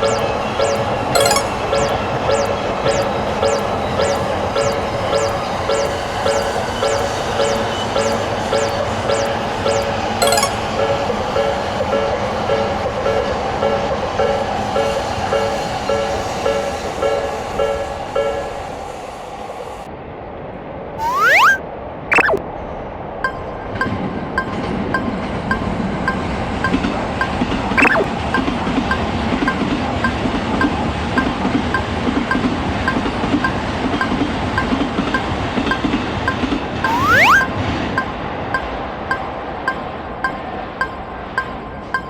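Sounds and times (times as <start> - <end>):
railroad crossing bell ringing: 0.0 - 18.6
rising whistle-like sweep: 21.0 - 22.4, 36.8 - 37.5.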